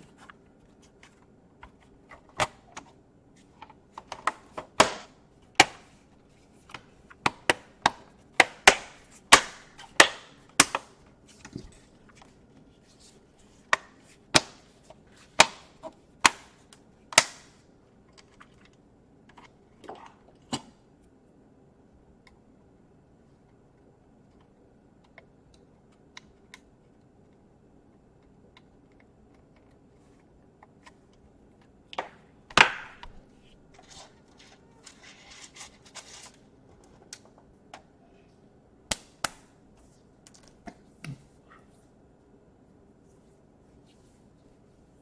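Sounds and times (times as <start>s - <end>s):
plastic parts clicking and knocking: 3.6s - 5.9s.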